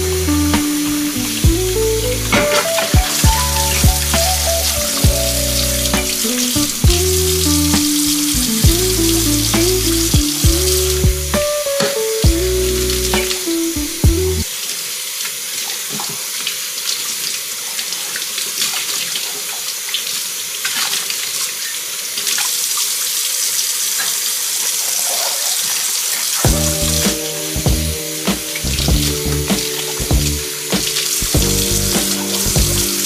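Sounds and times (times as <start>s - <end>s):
soft music: 0.0s - 14.5s, 26.4s - 33.0s.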